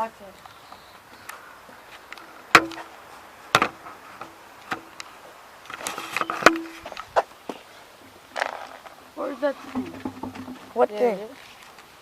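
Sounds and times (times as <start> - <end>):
metal clanks and knocks: 5.9 - 6.9, 9.6 - 10.9.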